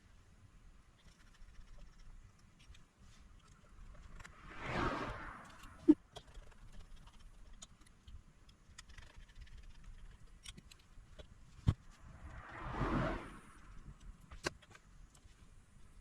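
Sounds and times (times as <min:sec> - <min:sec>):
light clicks of small parts: 0:05.4 - 0:12.5.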